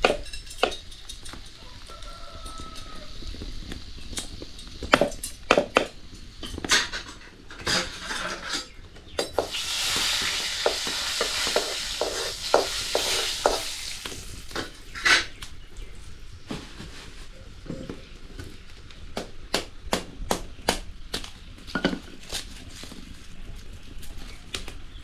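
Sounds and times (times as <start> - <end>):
metal spoon scraping a pan: 6.6 - 15.6
food sizzling in hot oil: 9.3 - 15.4.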